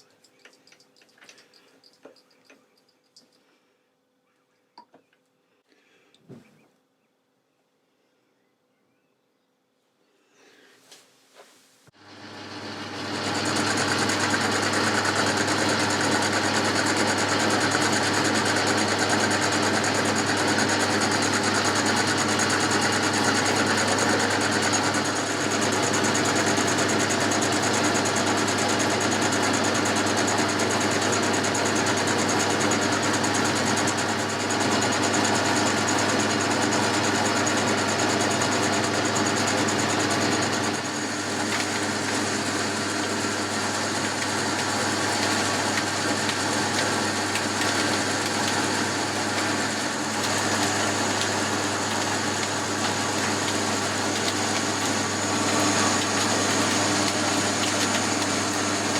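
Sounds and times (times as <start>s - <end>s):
lathe whirring: 12.0s - 58.9s.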